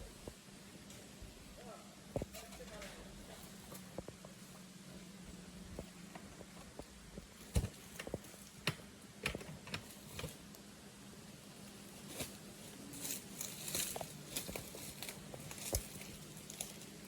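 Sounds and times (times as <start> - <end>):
footsteps crunching on rough ground: 12.0 - 17.0.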